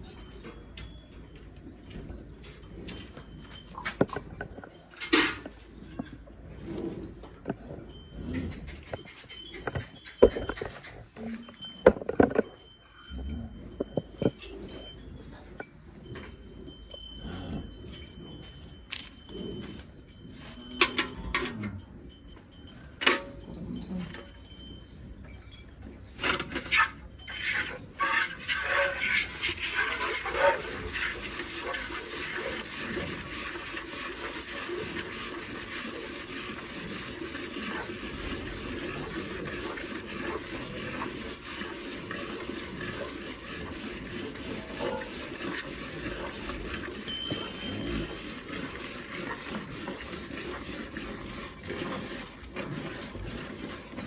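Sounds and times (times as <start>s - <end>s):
handling knocks and clicks: 9.0s - 11.1s, 11.9s - 12.6s
milk streaming into a pail: 28.0s - 54.0s.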